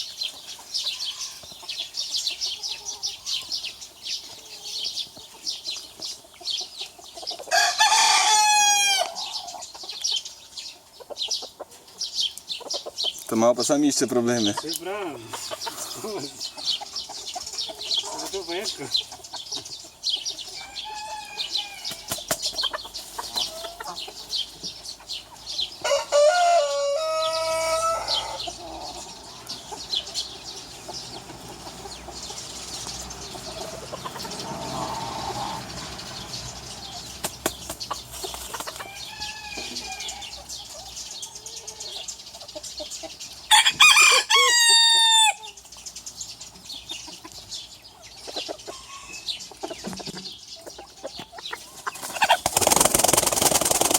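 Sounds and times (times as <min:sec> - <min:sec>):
roosters crowing: 0:00.0 - 0:09.9, 0:14.8 - 0:45.7, 0:48.2 - 0:49.9
chickens clucking: 0:00.0 - 0:53.9.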